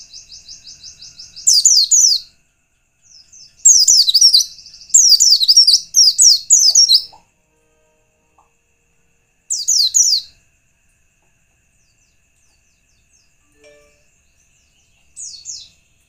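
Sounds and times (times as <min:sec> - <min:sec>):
bird twittering song: 0:00.0 - 0:07.3, 0:09.5 - 0:10.4, 0:11.7 - 0:15.9.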